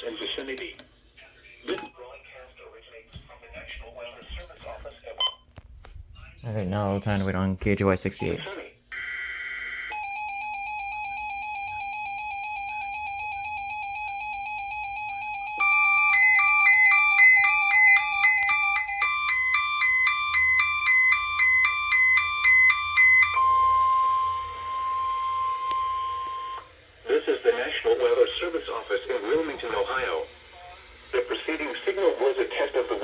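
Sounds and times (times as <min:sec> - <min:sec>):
two-pitch beeping alarms: 0:09.0 - 0:26.7
steady electronic alert tone: 0:09.9 - 0:26.6
radio hiss: 0:26.6 - 0:33.0.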